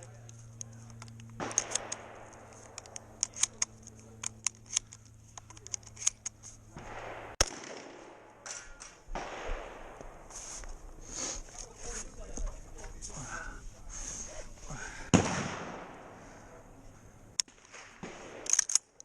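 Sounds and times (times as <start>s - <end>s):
sharp clicks and light knocks: 0.2s - 6.6s
loud shotgun shot: 6.8s - 8.4s, 9.1s - 10.2s, 15.1s - 16.2s.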